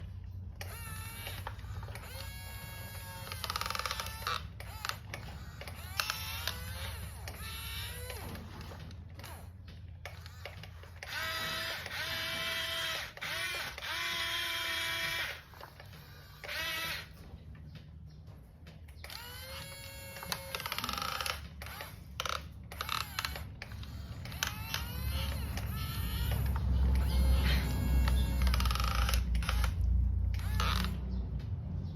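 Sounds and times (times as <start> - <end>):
small electric motor whirring: 0.6 - 17.2, 19.0 - 31.0
plastic gears clicking: 19.0 - 31.0.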